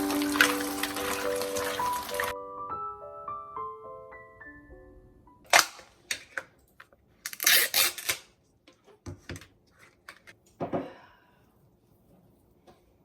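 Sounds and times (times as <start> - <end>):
music notes: 0.0 - 5.4.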